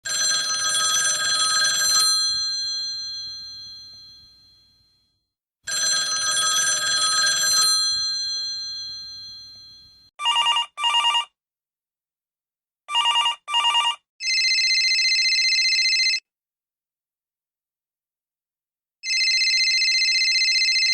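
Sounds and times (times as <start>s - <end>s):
telephone bell ringing: 0.0s - 5.0s, 5.7s - 11.4s, 12.9s - 16.2s, 19.0s - 20.9s.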